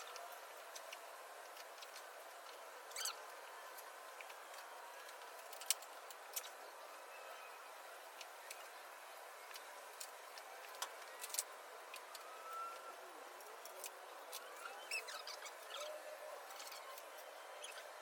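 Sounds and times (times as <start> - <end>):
faint bird chirps: 14.4 - 18.0.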